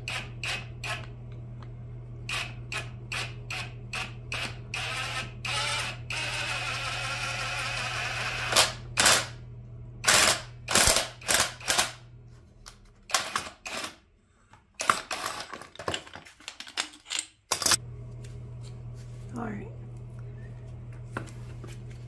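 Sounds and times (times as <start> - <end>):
metal parts clacking and knocking: 14.8 - 17.8.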